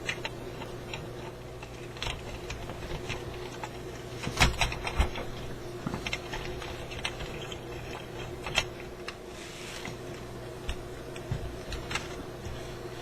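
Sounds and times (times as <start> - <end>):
parts and tools clicking: 0.0 - 9.2
steady low hum: 0.0 - 13.0
soft rustle: 9.3 - 10.1.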